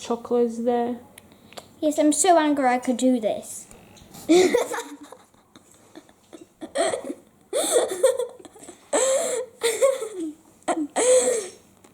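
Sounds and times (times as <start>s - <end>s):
quiet breaths: 1.2s - 1.8s
high-pitched laughing: 4.3s - 11.4s.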